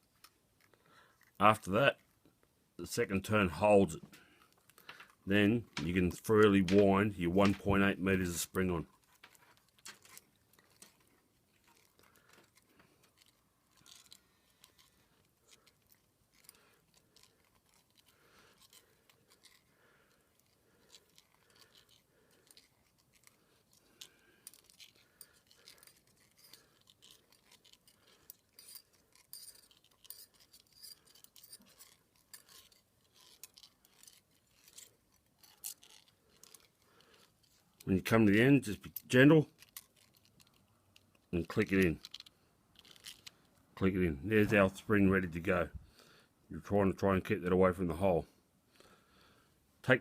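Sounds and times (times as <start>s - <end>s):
spring clicking and scraping: 8.8s - 44.8s.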